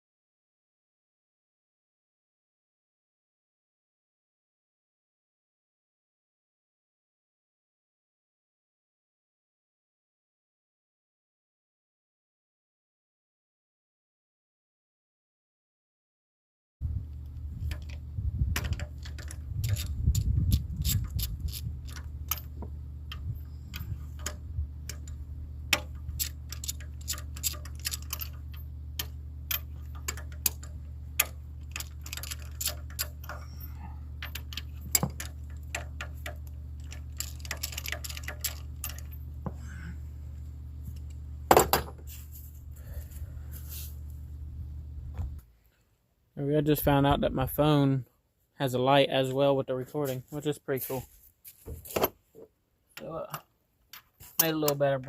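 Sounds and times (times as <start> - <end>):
steady low hum: 16.8 - 48.0
hand tools clinking on metal: 23.7 - 39.2.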